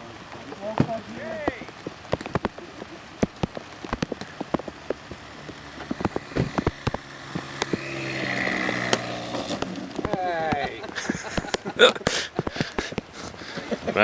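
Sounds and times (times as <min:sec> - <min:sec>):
raindrops tapping: 0:00.0 - 0:14.0
motor hum: 0:04.0 - 0:10.0.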